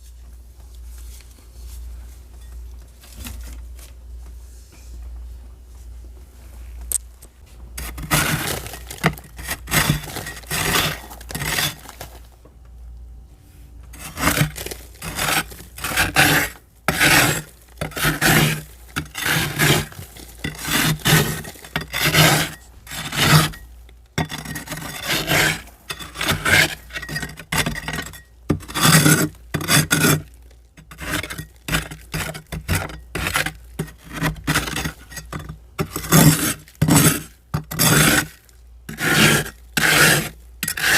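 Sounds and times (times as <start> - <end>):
frost being scraped: 7.8 - 12.1, 14.0 - 23.6, 24.4 - 27.8, 28.6 - 35.2, 35.8 - 40.9.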